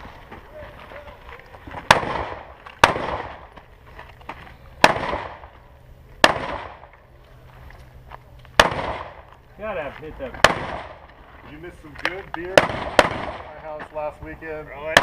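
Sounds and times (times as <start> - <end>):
rifle shots with rolling echo: 1.8 - 3.7, 4.8 - 7.1, 8.5 - 9.4, 10.2 - 11.2, 12.0 - 13.8, 14.7 - 15.0.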